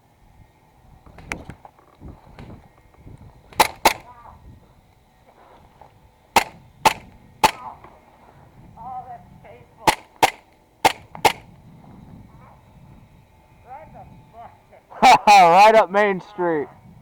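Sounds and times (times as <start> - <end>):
airsoft gun shots: 3.5 - 4.2, 6.4 - 7.9, 9.8 - 11.5.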